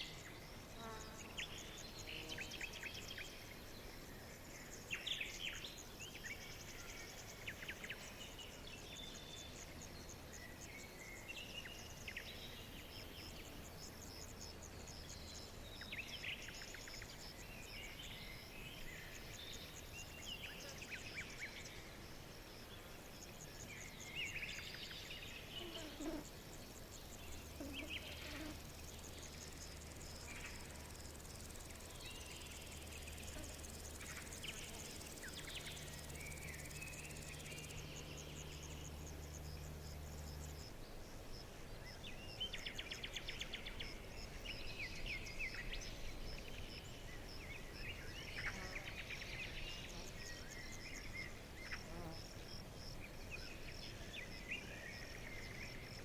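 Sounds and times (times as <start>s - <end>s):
insects chirring: 0.0s - 56.0s.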